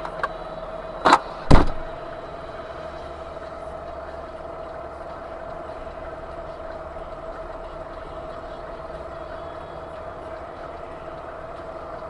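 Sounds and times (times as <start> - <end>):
car engine hum: 0.0 - 12.0
sharp bangs: 1.4 - 1.9.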